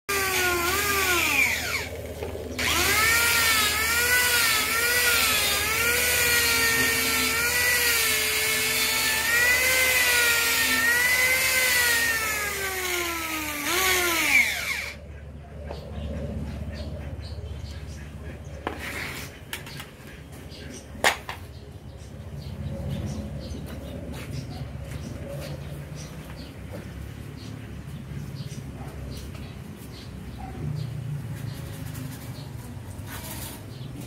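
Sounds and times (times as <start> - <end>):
electric power tool motor: 0.1 - 15.0.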